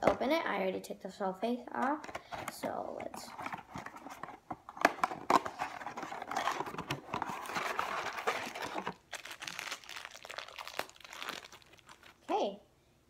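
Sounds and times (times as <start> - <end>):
packaging crinkling and tearing: 3.5 - 12.3.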